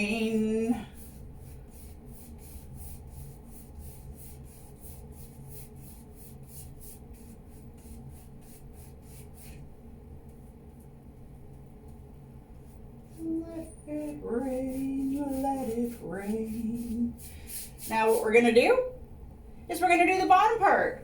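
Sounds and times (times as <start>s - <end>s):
paintbrush dabbing on canvas: 0.0s - 10.9s, 12.5s - 18.4s.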